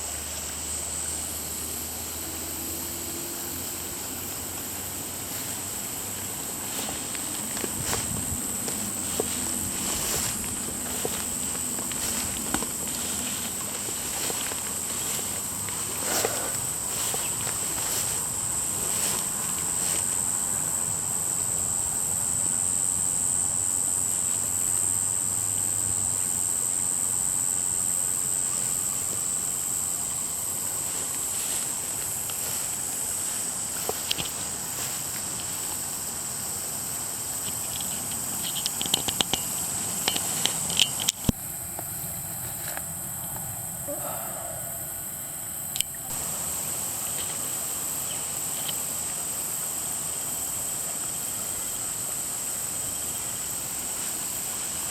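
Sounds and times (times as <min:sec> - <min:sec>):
high-pitched insect chorus: 0:00.0 - 0:54.9
rushing background noise: 0:01.8 - 0:20.2.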